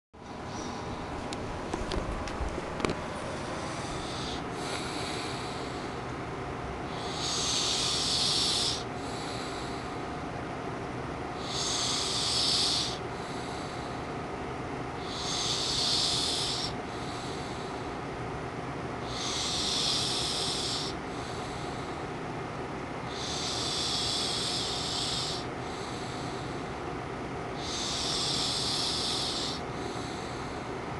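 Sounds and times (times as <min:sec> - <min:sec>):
steady background hum: 0:00.2 - 0:30.9
soft breath: 0:03.2 - 0:06.1, 0:06.9 - 0:10.2, 0:11.4 - 0:14.2, 0:15.0 - 0:18.0, 0:19.1 - 0:22.2, 0:23.1 - 0:26.8, 0:27.6 - 0:30.8
girl snoring: 0:06.9 - 0:09.5, 0:11.4 - 0:13.0, 0:15.0 - 0:16.8, 0:19.1 - 0:21.0, 0:23.2 - 0:25.5, 0:27.6 - 0:29.6.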